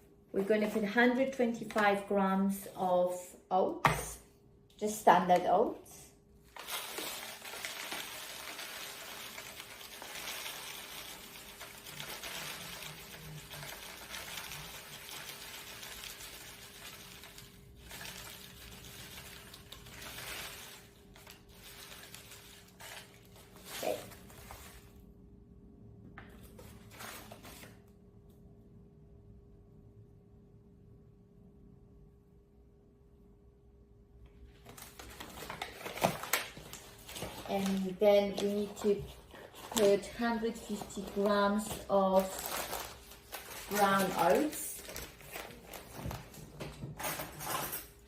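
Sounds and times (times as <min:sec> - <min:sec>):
oats pouring into a bowl: 0:06.5 - 0:25.0.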